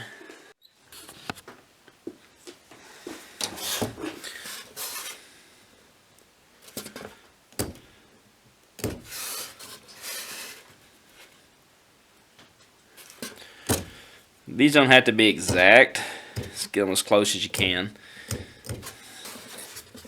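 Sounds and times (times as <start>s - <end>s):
marking tool scratching on steel: 3.5s - 5.2s, 8.8s - 10.7s, 15.2s - 20.0s
tools knocking on metal: 15.4s - 16.7s, 17.4s - 19.0s.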